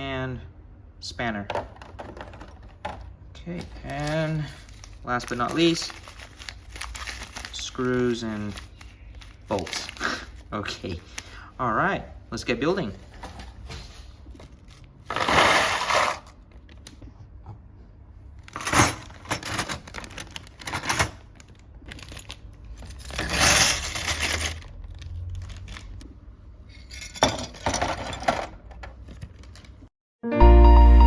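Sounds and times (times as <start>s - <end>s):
small metal parts clinking: 22.1s - 25.9s, 26.7s - 28.6s.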